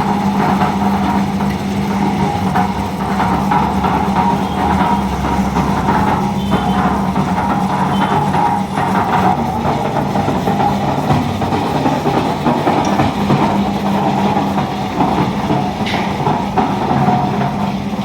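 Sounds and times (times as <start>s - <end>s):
concrete mixer drum rattling: 0.0s - 18.0s.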